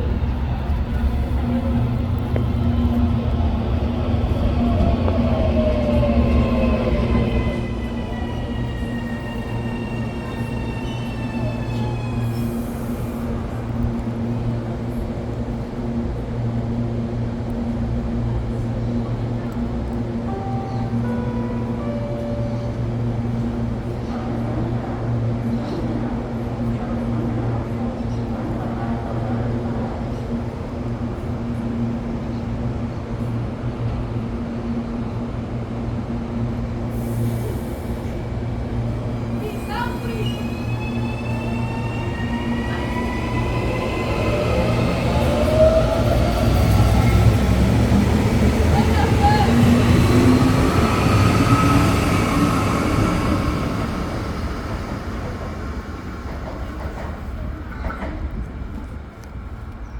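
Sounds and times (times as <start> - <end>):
electric train pulling away: 0.0 - 14.4, 36.8 - 57.0
faint train whine: 0.0 - 59.9.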